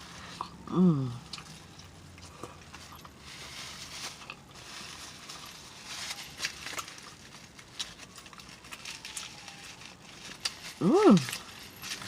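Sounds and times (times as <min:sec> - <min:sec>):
wet chewing and smacking: 0:00.1 - 0:03.2.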